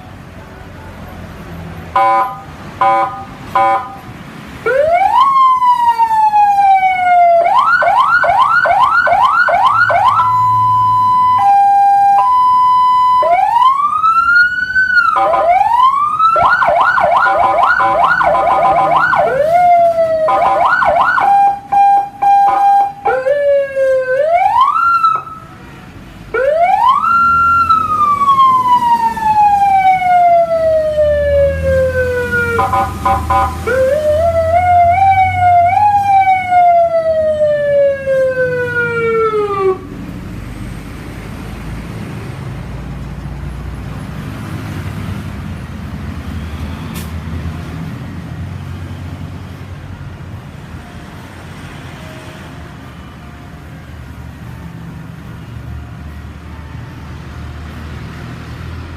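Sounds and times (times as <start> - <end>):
electronic siren: 2.0 - 4.0, 4.7 - 25.5, 26.4 - 39.9.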